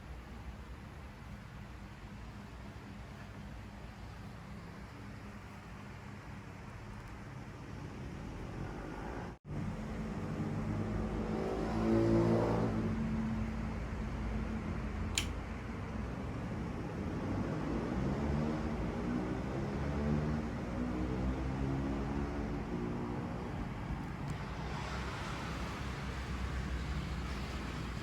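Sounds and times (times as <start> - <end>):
sharp click: 15.1 - 15.4
hiss of moving air: 24.1 - 28.0.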